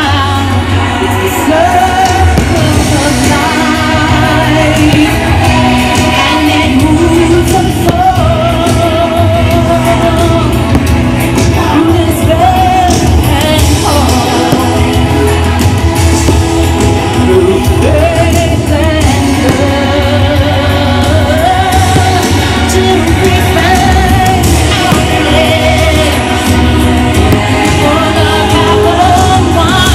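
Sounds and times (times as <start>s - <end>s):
steady bass line: 0.0s - 29.9s.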